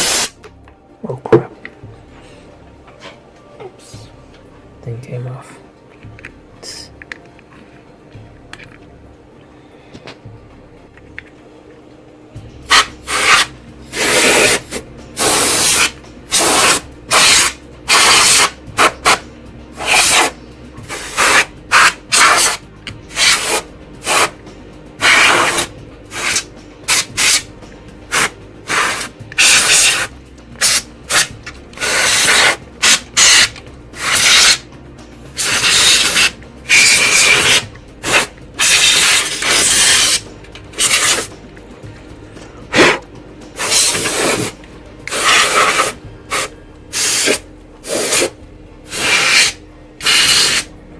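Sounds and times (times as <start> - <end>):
hissing and rubbing bursts: 0.0 - 0.4, 12.7 - 19.2, 19.8 - 24.3, 25.0 - 27.5, 28.1 - 34.7, 35.4 - 40.2, 40.8 - 41.3, 42.7 - 50.7.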